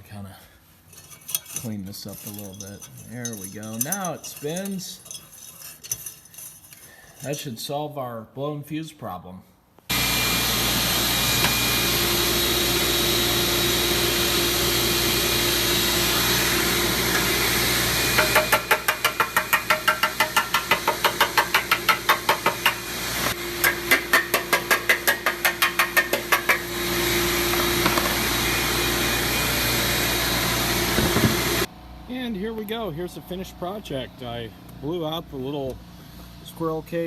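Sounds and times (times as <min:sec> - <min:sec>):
shop vacuum running: 0:09.9 - 0:33.8.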